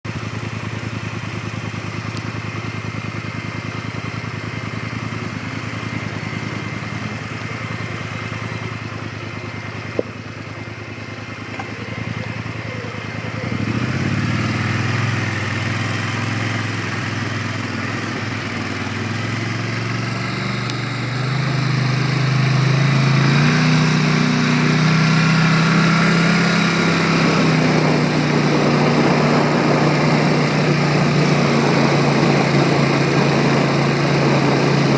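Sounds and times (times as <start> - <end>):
quad engine idling and revving: 0.0 - 34.9.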